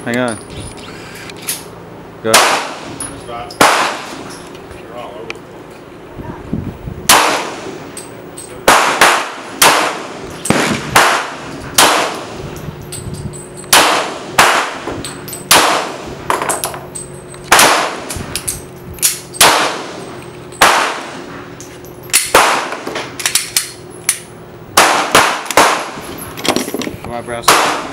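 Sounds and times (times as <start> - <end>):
pistol shots: 2.3 - 3.0, 3.6 - 4.2, 7.1 - 7.8, 8.6 - 12.4, 13.7 - 16.1, 17.5 - 18.1, 19.4 - 20.0, 20.6 - 21.3, 22.2 - 23.1, 24.8 - 26.0, 27.4 - 27.9.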